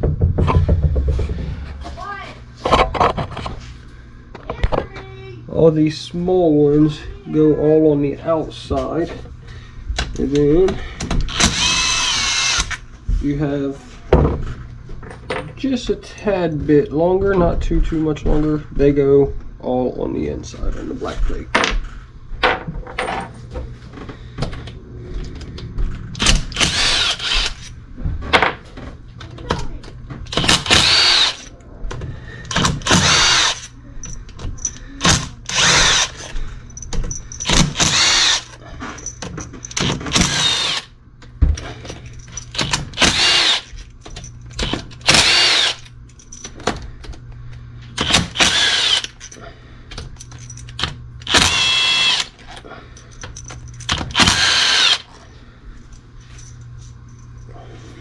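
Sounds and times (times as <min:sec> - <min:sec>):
steady low hum: 0:00.0 - 0:58.0
power drill whining: 0:11.3 - 0:12.8, 0:26.2 - 0:27.7, 0:30.3 - 0:31.5, 0:32.5 - 0:33.7, 0:35.0 - 0:36.3, 0:37.4 - 0:38.6, 0:39.8 - 0:40.9, 0:42.5 - 0:43.8, 0:44.6 - 0:45.9, 0:48.0 - 0:49.2, 0:51.2 - 0:52.4, 0:54.1 - 0:55.1.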